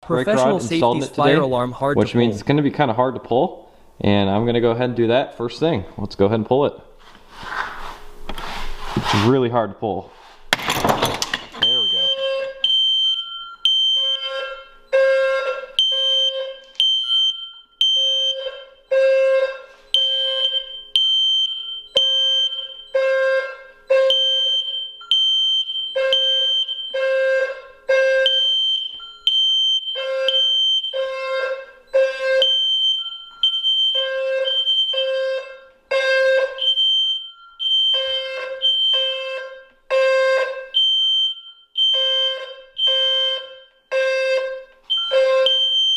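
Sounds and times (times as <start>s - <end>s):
high-pitched alarm tone: 0.3s - 2.4s, 11.6s - 45.9s
fire alarm horn blasts: 11.6s - 45.9s.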